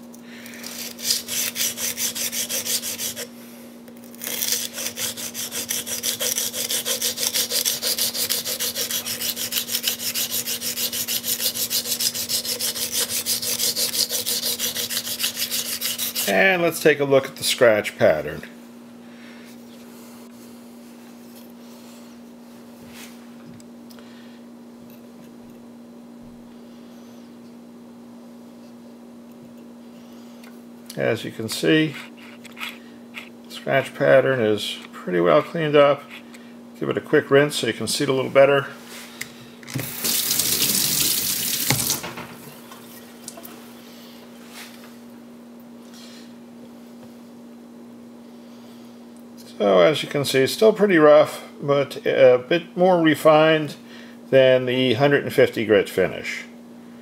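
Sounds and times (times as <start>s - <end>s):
low electrical hum: 0.0s - 57.0s
knife scraping on sharpening plate: 4.2s - 16.3s.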